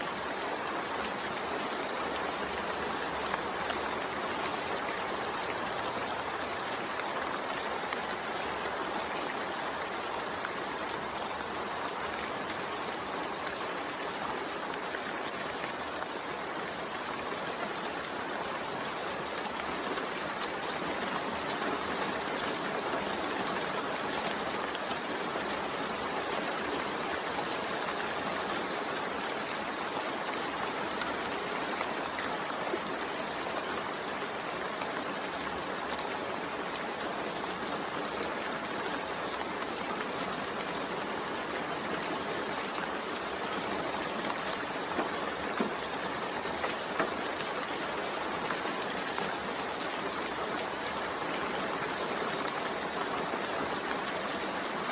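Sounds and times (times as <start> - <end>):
steady rainfall: 0.0 - 54.9.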